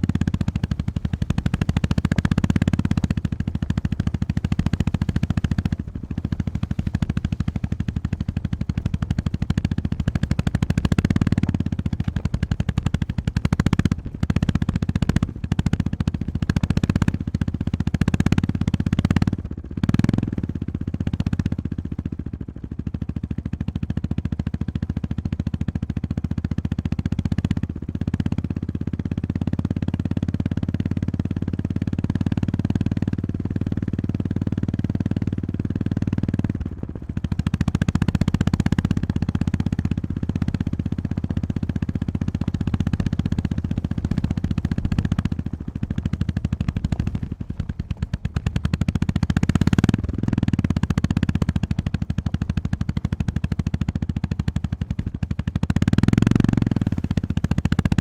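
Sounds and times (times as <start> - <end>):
motorcycle engine thumping: 0.0 - 18.9, 31.0 - 58.0.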